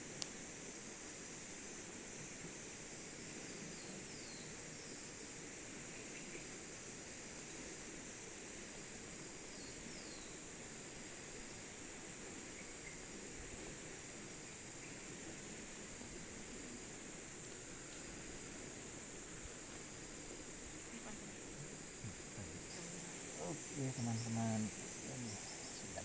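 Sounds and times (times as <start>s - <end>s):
high insect drone: 0.0s - 26.0s
bird call notes: 22.1s - 26.0s.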